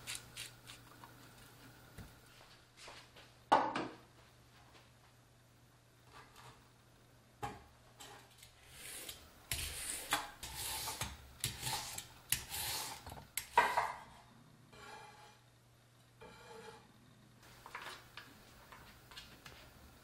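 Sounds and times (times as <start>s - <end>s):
scraping and rubbing: 8.0s - 13.8s.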